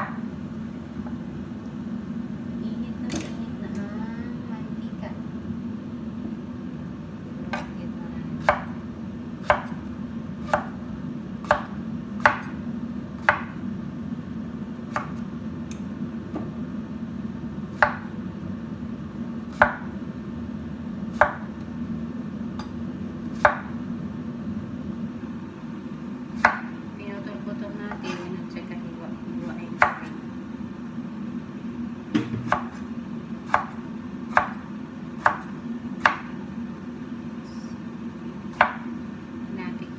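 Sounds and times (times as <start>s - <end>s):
low hum: 0.0s - 5.0s
knife chopping on cutting board: 7.5s - 7.8s, 8.4s - 8.8s, 9.4s - 10.8s, 11.4s - 12.6s, 13.2s - 13.6s, 14.9s - 15.3s, 17.8s - 18.2s, 19.5s - 19.9s, 21.1s - 21.6s, 22.6s - 23.8s, 26.4s - 26.8s, 29.4s - 30.2s, 32.2s - 32.9s, 33.5s - 36.4s, 38.5s - 38.9s.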